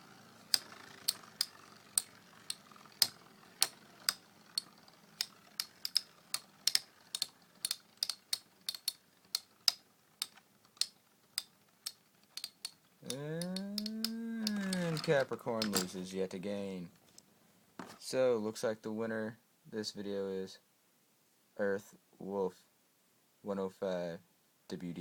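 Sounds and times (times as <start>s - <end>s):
spinning tops clicking together: 0.1s - 16.0s.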